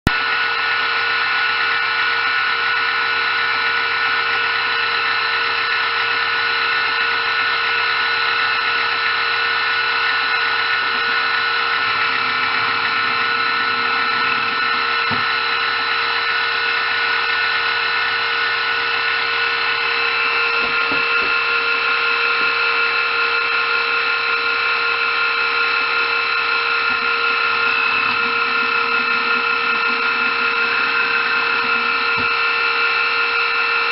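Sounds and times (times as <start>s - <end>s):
power tool motor whining: 0.1s - 33.9s.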